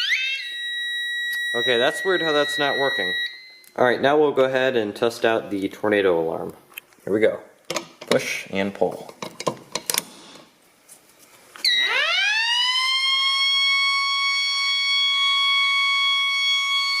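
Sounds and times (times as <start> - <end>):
siren wailing: 0.0 - 3.7, 11.6 - 17.0
alarm switch clicks: 1.2 - 3.8.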